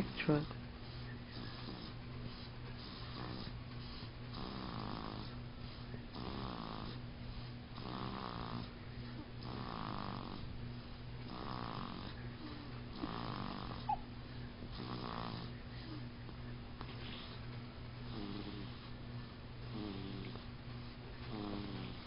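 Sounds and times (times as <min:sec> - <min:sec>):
baby snoring heavily: 0:01.3 - 0:05.4, 0:06.1 - 0:07.1, 0:07.7 - 0:08.8, 0:09.4 - 0:10.6, 0:11.3 - 0:14.0, 0:14.7 - 0:16.0, 0:18.1 - 0:18.9, 0:19.6 - 0:20.5, 0:21.3 - 0:22.0.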